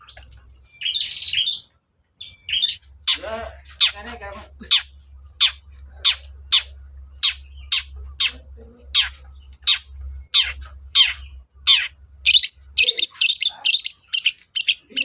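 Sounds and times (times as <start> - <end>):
bird harsh descending calls: 4.6 - 15.0.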